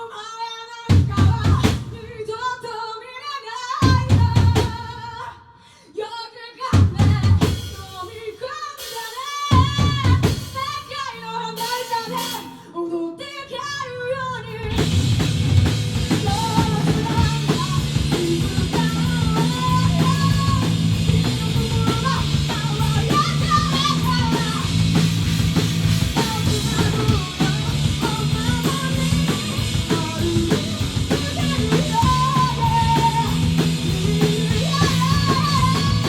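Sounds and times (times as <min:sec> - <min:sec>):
rock band playing live: 0:08.8 - 0:12.7, 0:14.4 - 0:36.0.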